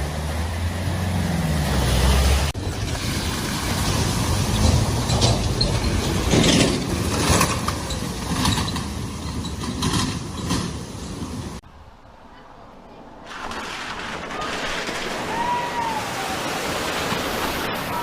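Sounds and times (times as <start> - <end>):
water surging and splashing: 0.0 - 8.6, 13.1 - 18.0.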